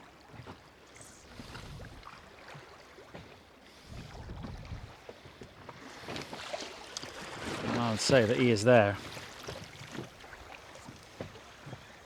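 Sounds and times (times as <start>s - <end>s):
wind noise: 3.9s - 5.0s
water slapping against boat hull: 5.6s - 12.0s.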